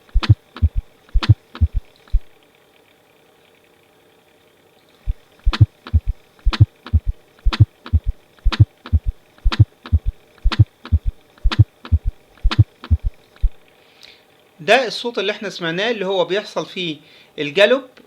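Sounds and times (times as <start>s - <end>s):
heart gallop thumps: 0.1s - 2.3s, 5.1s - 13.6s.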